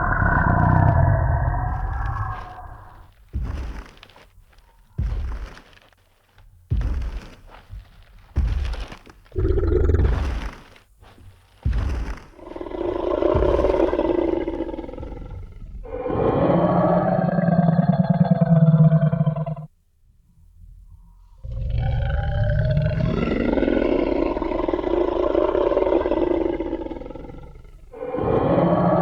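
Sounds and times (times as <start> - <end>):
dinosaur growling roar: 0.0 - 3.1, 9.4 - 10.3, 12.4 - 19.7, 21.4 - 29.0
heavy booming footstep stomps: 1.6 - 5.9, 6.5 - 15.5.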